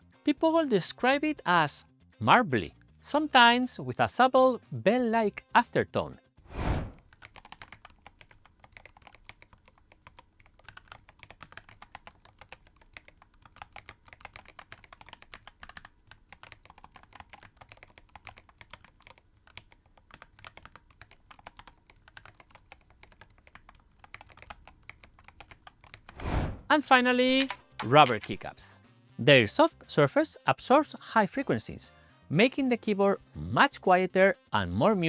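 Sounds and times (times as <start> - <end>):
mechanical keyboard typing: 7.1 - 26.2, 27.3 - 28.6.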